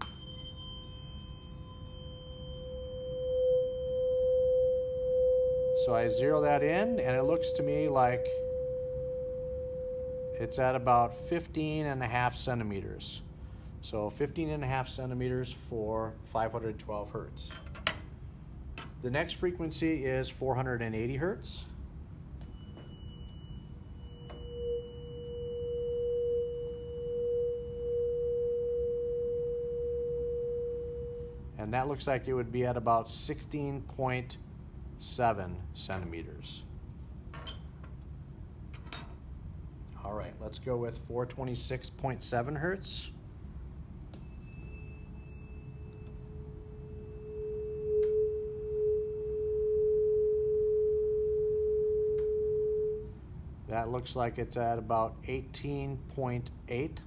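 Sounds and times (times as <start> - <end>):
tuning fork struck: 0.0 - 12.0, 22.4 - 31.4, 44.1 - 53.1
tuning fork ringing pure tone: 0.0 - 13.0, 22.4 - 32.0, 44.1 - 53.2.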